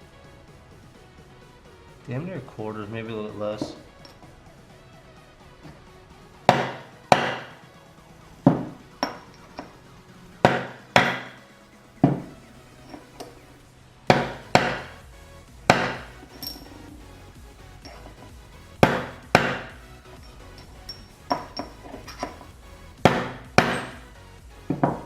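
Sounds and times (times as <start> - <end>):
hammer striking metal punch: 3.6 - 4.2, 6.5 - 7.6, 8.5 - 9.7, 10.4 - 11.4, 12.0 - 13.3, 14.1 - 14.9, 15.7 - 17.0, 17.8 - 24.1.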